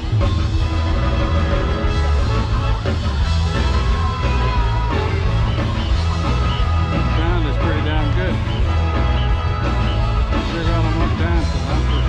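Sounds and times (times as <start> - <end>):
loud music with heavy bass: 0.0 - 12.0.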